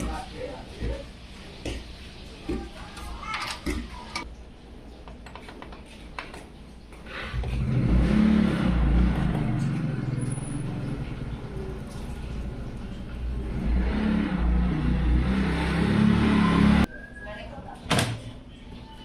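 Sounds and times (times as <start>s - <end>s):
engine rumbling: 7.1s - 16.9s.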